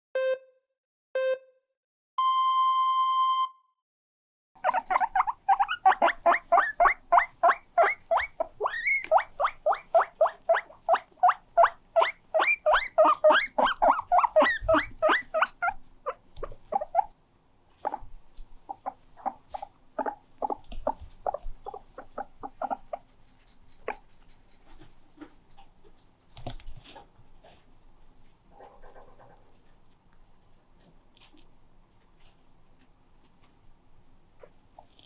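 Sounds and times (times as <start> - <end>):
guinea pig squeaking: 4.6 - 17.2, 17.8 - 27.0.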